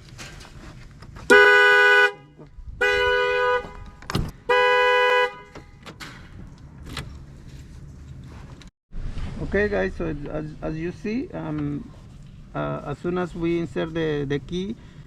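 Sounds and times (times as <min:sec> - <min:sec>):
car horn blasts: 0:01.3 - 0:05.7.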